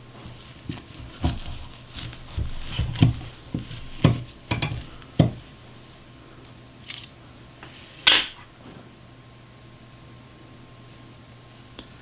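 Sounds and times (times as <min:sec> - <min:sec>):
sharp loud click of crystal popping: 0:06.9 - 0:07.2.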